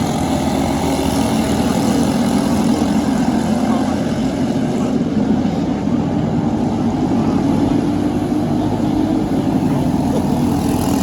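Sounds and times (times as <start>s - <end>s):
kart engine at high revs: 0.0s - 11.0s.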